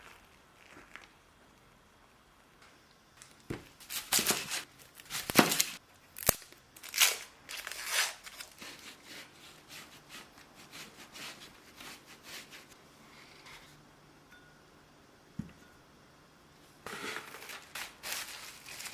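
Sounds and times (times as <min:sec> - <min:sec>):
dry crinkling and tearing: 0:03.9 - 0:08.6, 0:17.3 - 0:18.9.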